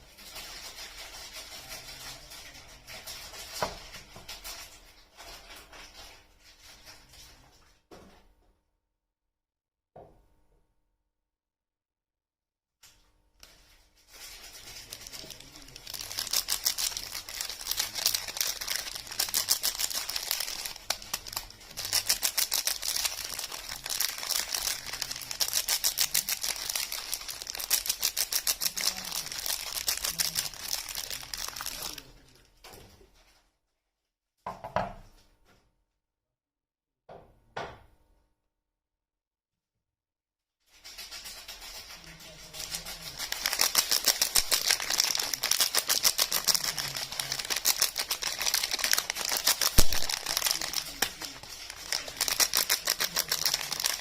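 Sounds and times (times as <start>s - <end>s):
wrapper rustles: 13.4s - 32.5s, 40.7s - 54.0s
soap wrapper crinkling and tearing: 14.1s - 32.1s, 42.6s - 54.0s.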